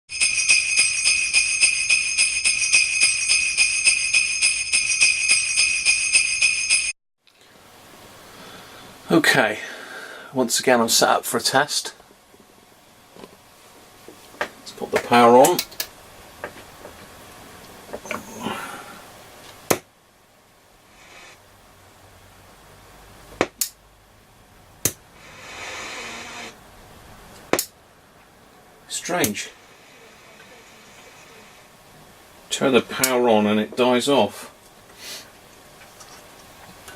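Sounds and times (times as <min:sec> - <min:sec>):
sleigh bells shaken: 0:00.1 - 0:07.0
radio hiss: 0:29.1 - 0:31.8.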